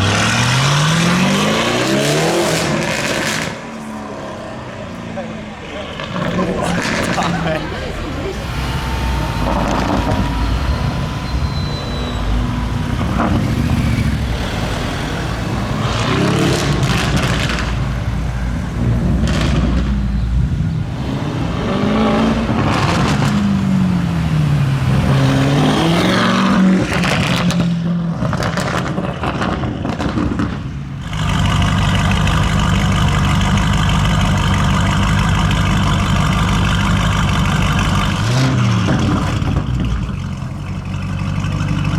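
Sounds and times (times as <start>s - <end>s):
car engine revving with pops: 8.4s - 41.9s.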